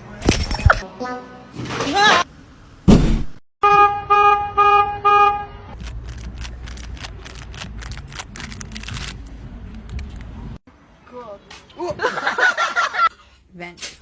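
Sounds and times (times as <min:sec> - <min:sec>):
horn honking: 0:03.6 - 0:05.8.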